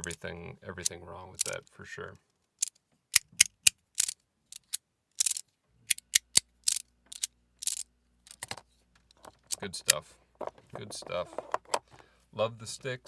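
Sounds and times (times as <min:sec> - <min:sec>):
fidget slider clicking: 0:02.6 - 0:08.6.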